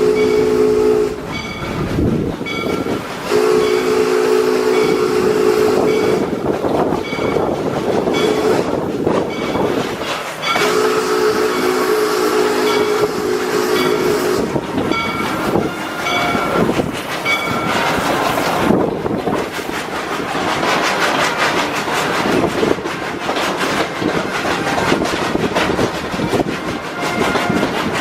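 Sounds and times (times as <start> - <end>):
train whistle chord: 0.0 - 1.6, 3.3 - 6.3, 10.5 - 16.7, 26.3 - 27.8
wheels clattering over rail joints: 1.2 - 4.0, 5.8 - 10.9, 13.7 - 28.0.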